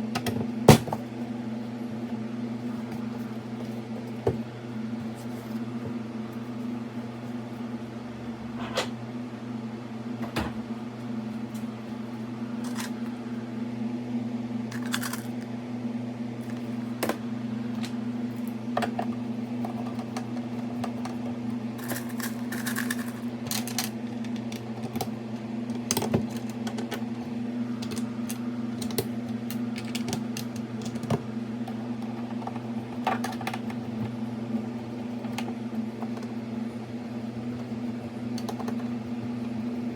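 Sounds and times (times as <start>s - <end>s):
low electrical hum: 0.0s - 39.9s.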